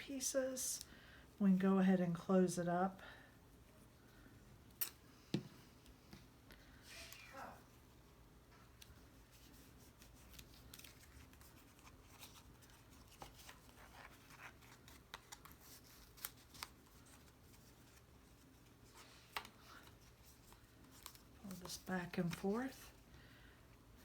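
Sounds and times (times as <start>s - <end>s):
cardstock rustling and folding: 8.9s - 23.0s.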